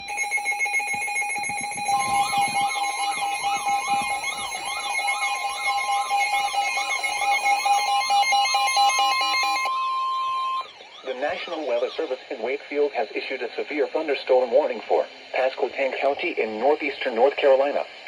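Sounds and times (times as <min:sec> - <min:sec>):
steady electronic tone: 0:00.0 - 0:10.9.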